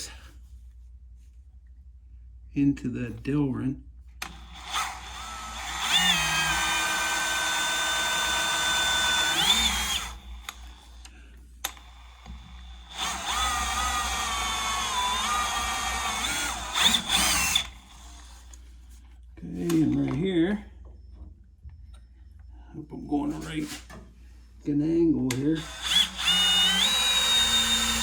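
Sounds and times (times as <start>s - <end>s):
power drill drilling into plastic: 4.2s - 11.0s, 11.8s - 18.5s, 25.6s - 28.0s.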